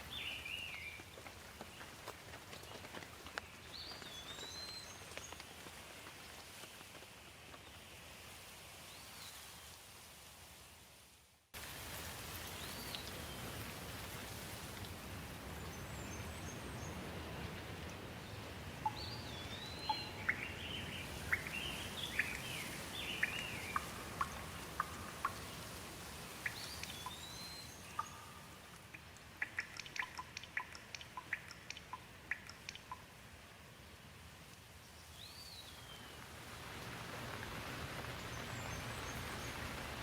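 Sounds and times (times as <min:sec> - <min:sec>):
rain falling on leaves: 0:00.0 - 0:40.0
birds calling: 0:18.8 - 0:25.7, 0:26.4 - 0:33.0.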